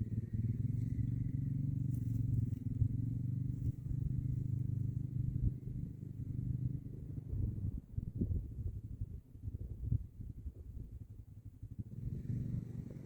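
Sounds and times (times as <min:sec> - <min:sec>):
small engine running: 0:00.0 - 0:07.4, 0:11.8 - 0:13.0.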